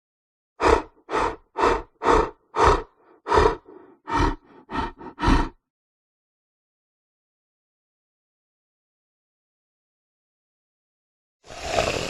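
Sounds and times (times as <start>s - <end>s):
lion grunting: 0.6s - 5.6s.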